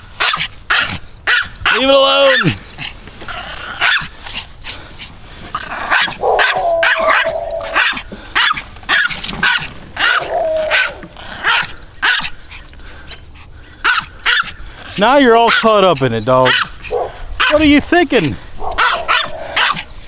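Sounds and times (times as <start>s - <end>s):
small dog barking: 0.2s - 2.6s, 3.8s - 4.1s, 5.8s - 12.3s, 13.8s - 14.6s, 16.4s - 17.6s, 18.6s - 19.9s.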